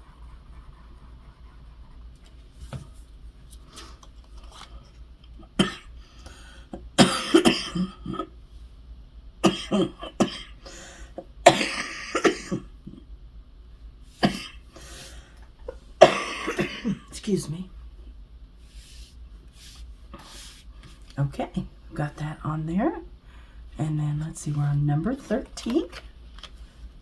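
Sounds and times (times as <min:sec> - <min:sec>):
person coughing hard: 0:05.6 - 0:05.9, 0:07.0 - 0:08.3, 0:09.4 - 0:10.6, 0:11.4 - 0:13.0, 0:14.2 - 0:14.6, 0:16.0 - 0:17.1.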